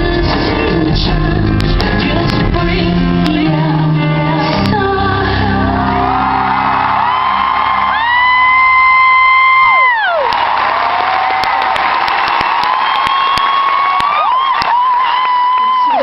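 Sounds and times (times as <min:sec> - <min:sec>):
live band playing: 0:00.0 - 0:06.8
audience whooping and screaming: 0:05.6 - 0:16.0.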